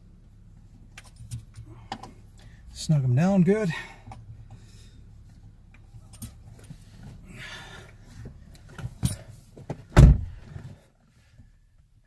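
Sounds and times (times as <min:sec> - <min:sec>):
heavy thump: 0:09.0 - 0:10.8.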